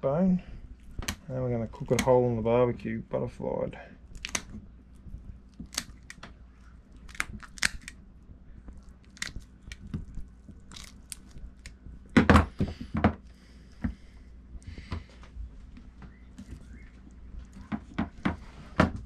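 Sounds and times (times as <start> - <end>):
blade crunching through fish bone: 4.0 - 8.0, 8.6 - 12.2.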